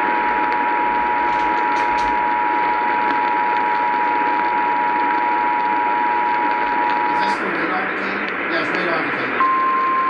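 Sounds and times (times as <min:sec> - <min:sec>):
radio static hiss: 0:00.0 - 0:10.0
two-tone alarm: 0:09.4 - 0:10.0.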